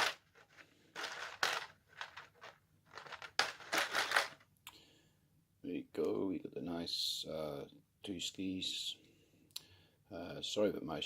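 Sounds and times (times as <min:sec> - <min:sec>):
plastic packaging crinkling: 0:00.0 - 0:04.4.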